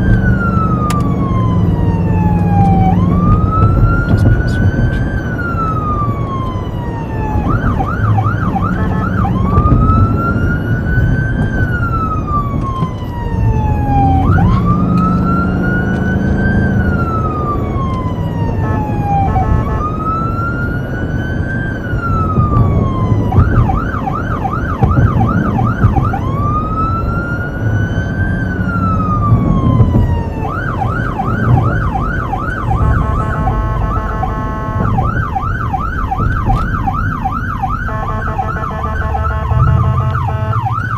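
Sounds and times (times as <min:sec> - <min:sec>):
electronic siren wailing and yelping: 0:00.0 - 0:40.9
engine and road rumble: 0:00.0 - 0:40.9.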